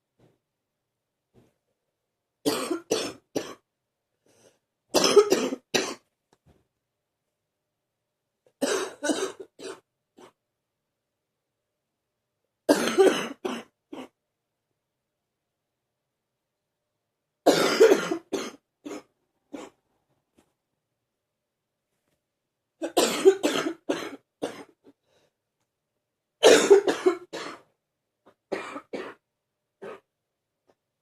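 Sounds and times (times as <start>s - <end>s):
person coughing deeply: 2.5s - 3.6s, 5.0s - 6.0s, 8.6s - 10.4s, 12.7s - 14.2s, 17.5s - 19.8s, 22.8s - 24.8s, 26.4s - 27.7s, 28.5s - 29.2s.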